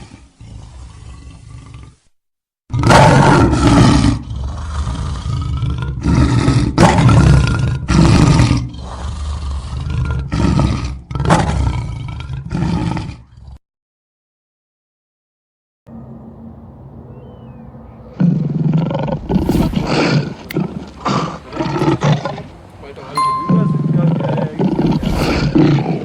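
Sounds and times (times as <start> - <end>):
lion roaring: 2.7 - 13.6, 17.2 - 22.6.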